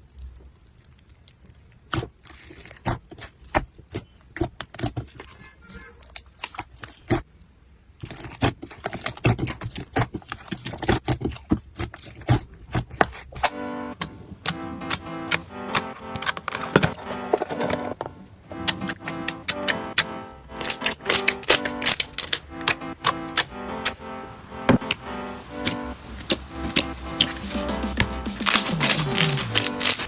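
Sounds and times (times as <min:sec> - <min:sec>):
music: 0:13.4 - 0:30.0
slime crackling and popping: 0:14.4 - 0:17.0, 0:18.6 - 0:24.0, 0:25.6 - 0:30.0.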